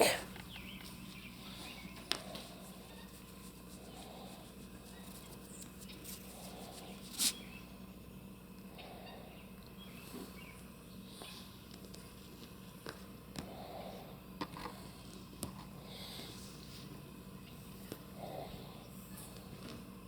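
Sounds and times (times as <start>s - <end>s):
faint bird calls: 0.0s - 11.6s.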